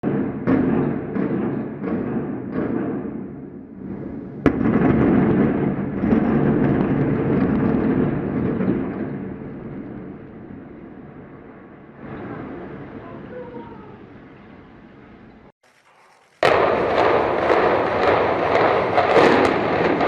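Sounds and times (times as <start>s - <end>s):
loud crack: 0.0s - 12.4s, 15.6s - 20.0s
sharp explosive bangs: 0.0s - 13.2s, 15.6s - 20.0s
rumble of building collapse: 0.0s - 13.7s.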